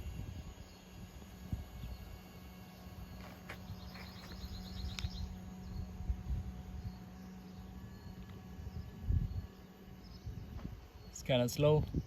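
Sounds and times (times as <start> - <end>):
steady low hum: 0.0 - 12.0
rumbling handling noise: 3.1 - 5.3.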